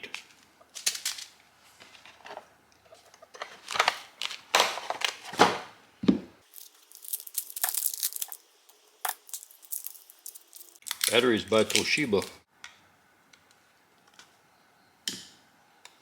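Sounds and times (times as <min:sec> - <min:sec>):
plastic packaging crinkling and tearing: 0:06.5 - 0:12.4.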